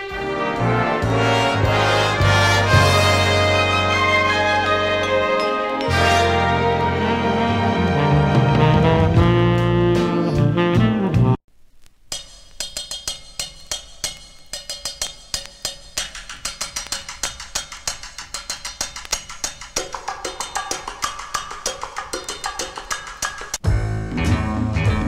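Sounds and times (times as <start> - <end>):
fuller music track: 0.0 - 11.4, 12.1 - 25.0
pitched melodic line: 0.4 - 10.7
fast drum and percussion hits: 12.0 - 25.0.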